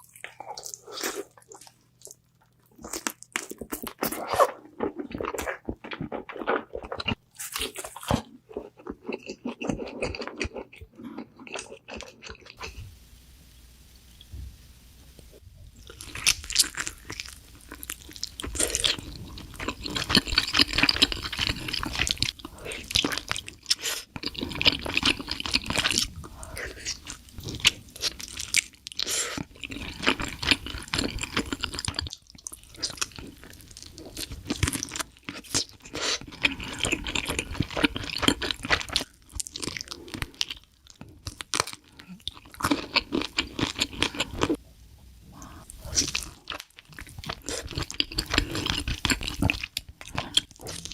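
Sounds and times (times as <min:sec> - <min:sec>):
person crunching and chewing food: 0:00.0 - 0:12.8, 0:15.8 - 0:44.6, 0:45.4 - 0:50.9.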